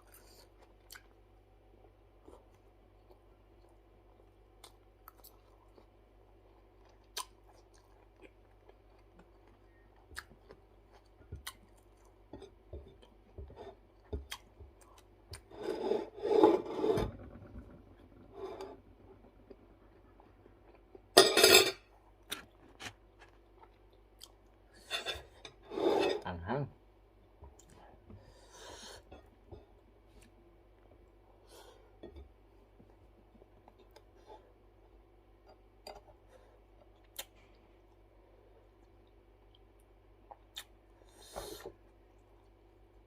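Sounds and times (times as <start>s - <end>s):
rasping scrape: 15.6s - 17.2s.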